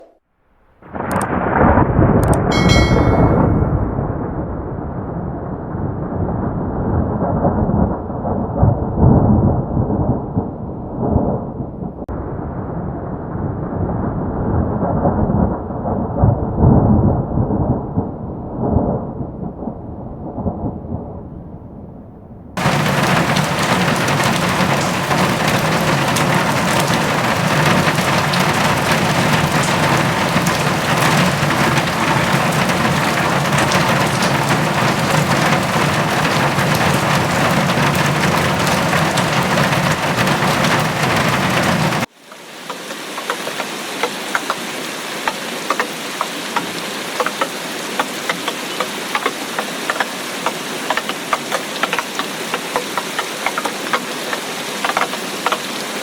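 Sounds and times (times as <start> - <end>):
heavy rain pouring: 0.8 - 3.8, 22.6 - 56.0
low rumble: 0.8 - 42.1
raindrops ticking: 1.0 - 1.3, 22.6 - 44.6, 45.3 - 55.7.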